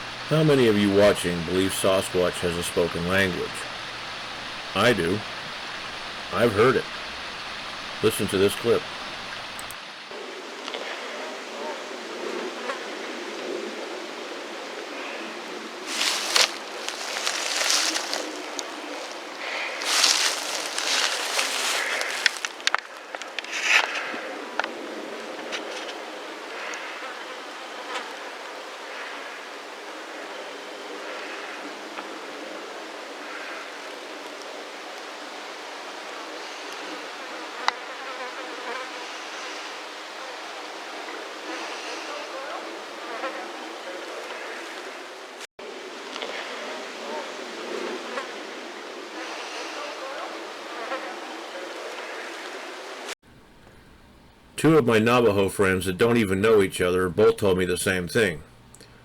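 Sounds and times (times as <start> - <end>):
rustling noise bursts: 0.0 - 9.9, 15.9 - 22.8
stream rushing: 0.0 - 10.1, 15.9 - 22.6
faint indistinct sounds: 0.0 - 10.2, 15.8 - 22.8
steady hiss: 0.0 - 10.5, 15.7 - 22.8
insect-like buzz: 0.0 - 11.4, 15.0 - 22.8.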